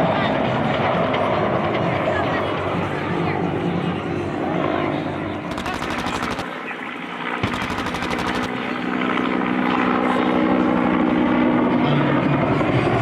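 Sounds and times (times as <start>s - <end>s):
helicopter engine hum: 5.5s - 6.5s, 7.4s - 8.7s
helicopter rotor chopping: 5.5s - 6.6s, 7.4s - 8.7s.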